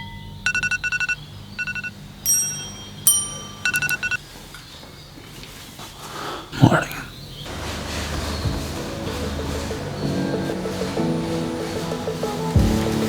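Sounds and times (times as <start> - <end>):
electronic alarm beeping: 0.0 - 4.2
long alarm tones: 0.0 - 4.2.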